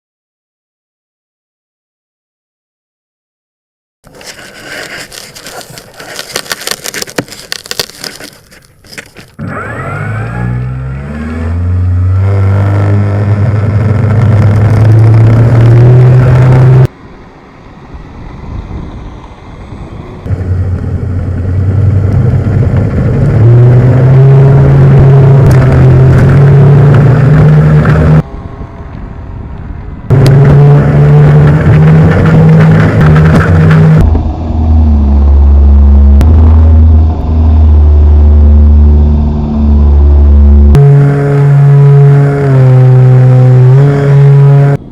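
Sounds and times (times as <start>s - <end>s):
model plane motors and propellers: 8.0s - 16.9s.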